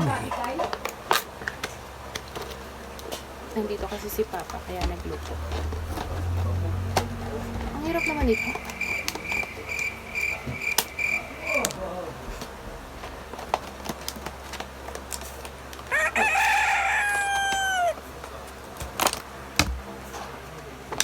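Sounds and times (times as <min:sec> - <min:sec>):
rooster crowing: 0:15.8 - 0:18.1.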